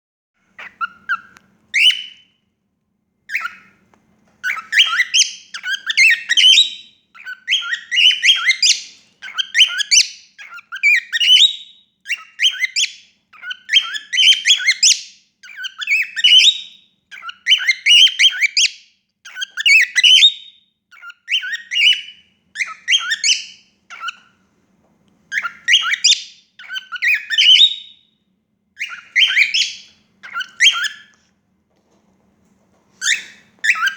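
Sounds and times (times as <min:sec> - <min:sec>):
cockatiel chirping and squawking: 0:00.5 - 0:02.3, 0:03.3 - 0:03.8, 0:04.4 - 0:24.4, 0:25.3 - 0:28.0, 0:28.8 - 0:31.2, 0:33.0 - 0:33.9.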